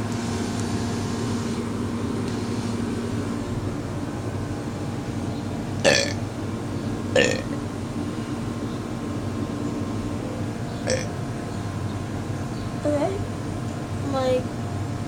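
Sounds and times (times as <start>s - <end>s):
low background hum: 0.0s - 15.0s
burp: 5.8s - 6.2s, 7.1s - 7.6s, 10.8s - 11.1s.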